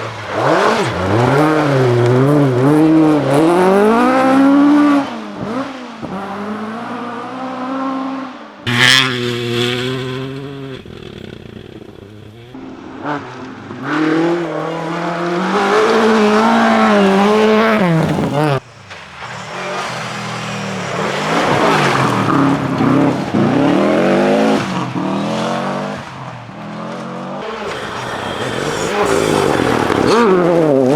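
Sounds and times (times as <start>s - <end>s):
rally car engine at full throttle: 0.0s - 30.9s.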